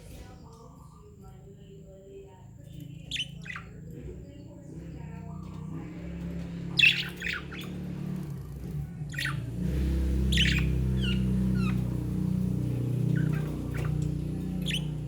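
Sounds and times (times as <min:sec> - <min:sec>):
budgerigars squawking and chirping: 0:03.0 - 0:04.1, 0:05.1 - 0:15.0.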